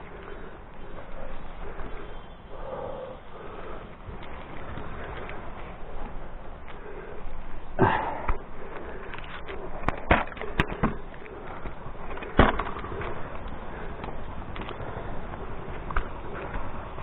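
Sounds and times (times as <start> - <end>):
steady rustling hiss: 0.0 - 17.0.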